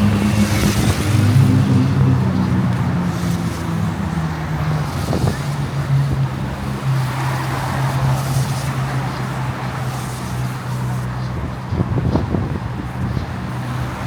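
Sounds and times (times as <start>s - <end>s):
wind: 0.0s - 14.0s.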